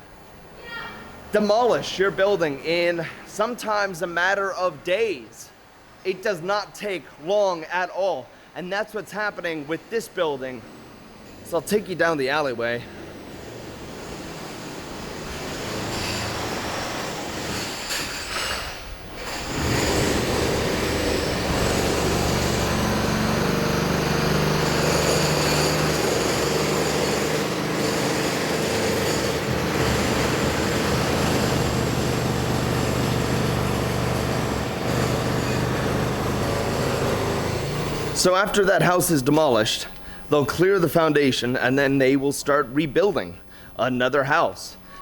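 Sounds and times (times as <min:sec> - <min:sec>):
demolition machinery grinding: 0:09.2 - 0:39.0.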